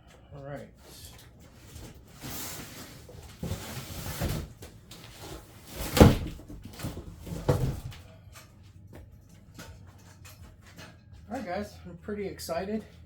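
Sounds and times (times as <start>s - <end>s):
cardboard packaging rustling: 1.5s - 8.0s.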